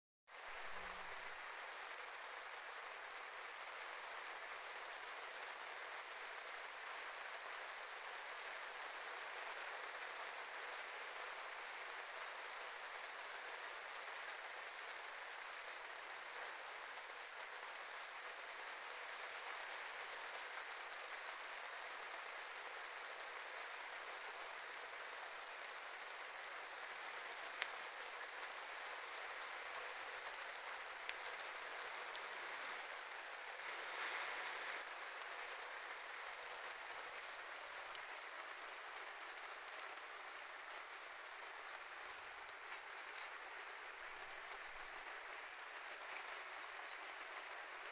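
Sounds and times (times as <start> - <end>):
steady rain hiss: 0.3 - 47.9
raindrop ticks: 16.9 - 22.6, 23.7 - 34.1, 34.8 - 47.6.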